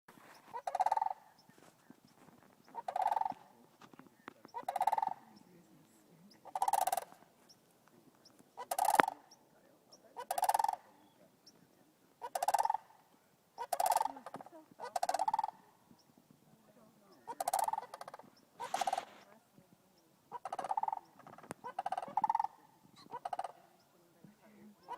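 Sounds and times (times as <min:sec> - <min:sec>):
crane calling with rattling call: 0:00.1 - 0:03.6, 0:04.4 - 0:05.5, 0:06.3 - 0:07.6, 0:08.2 - 0:09.4, 0:10.2 - 0:11.2, 0:12.2 - 0:16.2, 0:17.1 - 0:19.4, 0:20.3 - 0:23.9.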